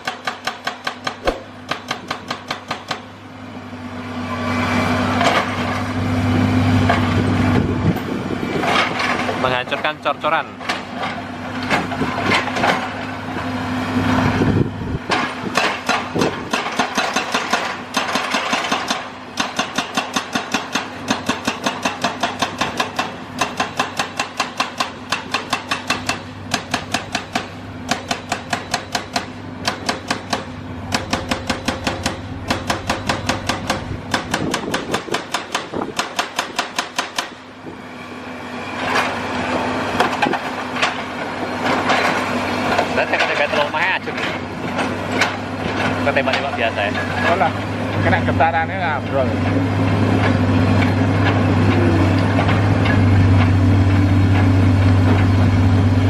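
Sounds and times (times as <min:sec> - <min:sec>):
hydraulic breaker pounding concrete: 0:00.0 - 0:03.1, 0:14.5 - 0:37.6, 0:38.8 - 0:56.0
diesel engine running: 0:24.9 - 0:36.0, 0:37.3 - 0:56.0.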